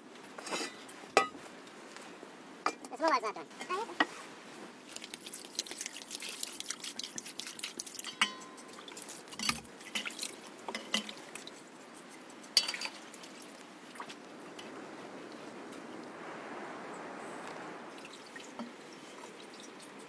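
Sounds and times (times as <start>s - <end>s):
utensils clinking on dishes: 0.4s - 1.4s, 7.7s - 11.5s, 12.4s - 13.0s.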